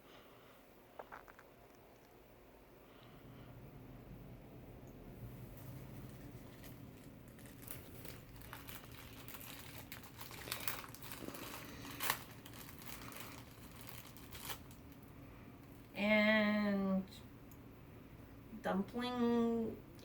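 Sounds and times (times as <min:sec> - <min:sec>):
packaging crinkling: 0:05.7 - 0:15.1.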